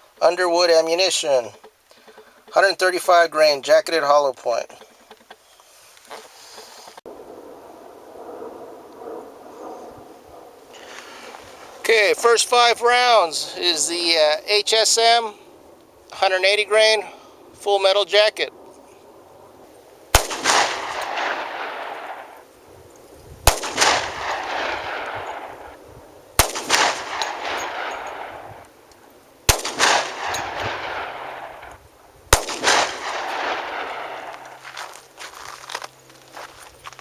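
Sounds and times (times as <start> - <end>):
pistol shots with rolling echo: 20.1 - 22.5, 23.4 - 25.8, 26.4 - 28.7, 29.4 - 34.6.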